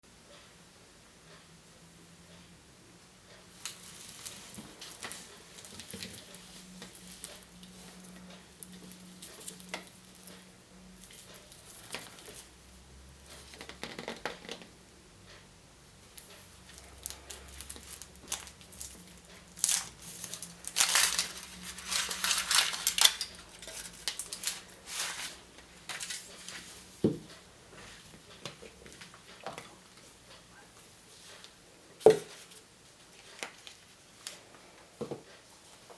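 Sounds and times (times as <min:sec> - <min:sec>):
wrappers crinkling and tearing: 0:16.7 - 0:26.6.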